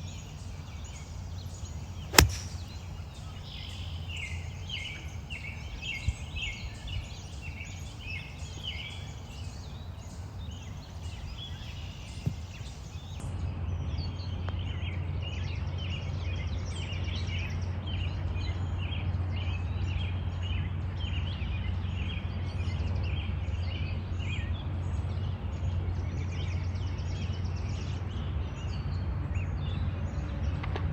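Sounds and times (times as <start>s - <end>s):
birds singing and chirping: 0.0s - 13.2s
sharp click: 2.1s - 2.8s.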